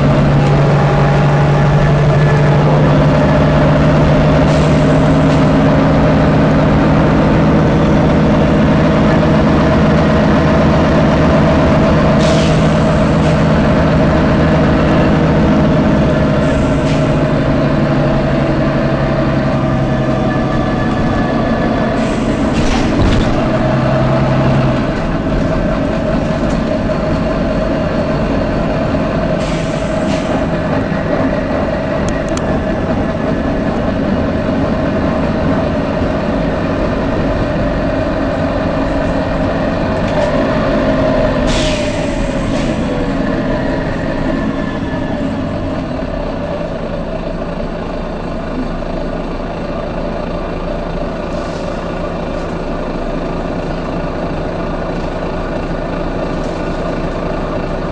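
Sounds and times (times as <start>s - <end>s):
bus engine and road noise: 0.0s - 57.9s
short air hisses: 12.2s - 12.8s, 29.4s - 30.4s, 41.4s - 42.9s.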